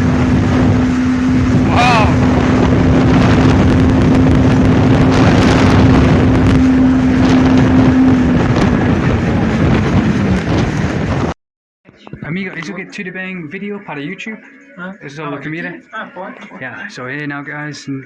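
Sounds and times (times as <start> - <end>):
boat engine running: 0.0 - 11.4
wind on microphone: 0.0 - 11.4.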